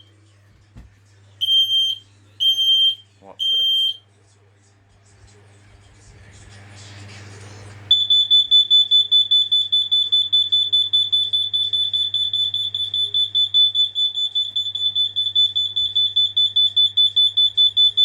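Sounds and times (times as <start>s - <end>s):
high piercing alarm beeping: 1.4s - 4.0s, 7.9s - 18.0s.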